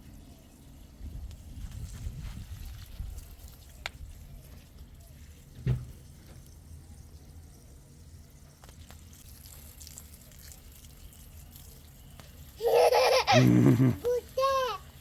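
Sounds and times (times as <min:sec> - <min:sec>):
water dripping and trickling: 0:00.1 - 0:15.0
toddler vocalizing: 0:13.0 - 0:14.8.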